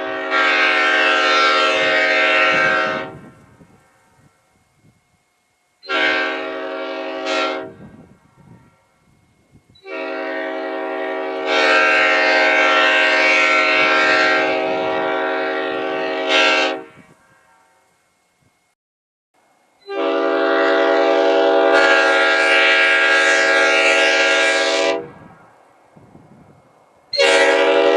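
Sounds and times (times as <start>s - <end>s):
locomotive air horn chord: 0.0s - 4.4s, 5.8s - 9.0s, 9.8s - 17.9s, 19.8s - 25.3s, 27.1s - 27.9s.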